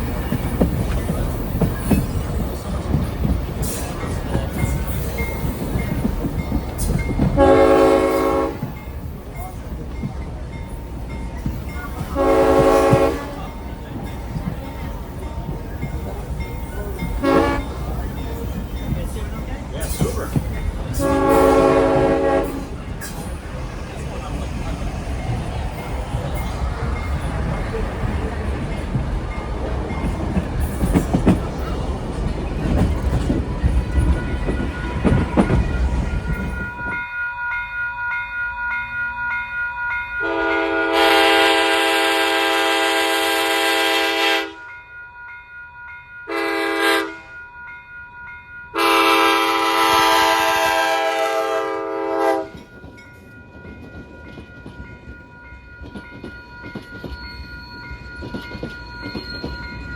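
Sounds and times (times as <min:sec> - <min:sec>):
train clattering along rails: 0:00.0 - 0:37.2, 0:38.7 - 0:44.8, 0:48.2 - 0:59.9
locomotive horn blasts: 0:07.3 - 0:08.7, 0:12.1 - 0:13.5, 0:17.2 - 0:17.8, 0:21.0 - 0:22.8, 0:40.2 - 0:44.7, 0:46.3 - 0:47.4, 0:48.8 - 0:52.6.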